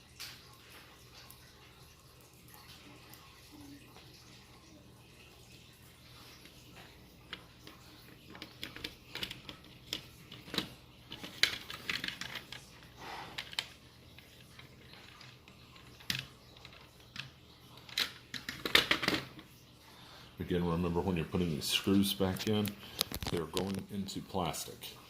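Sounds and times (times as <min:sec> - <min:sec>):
plastic parts clicking and tapping: 0:07.3 - 0:19.5, 0:22.4 - 0:23.9.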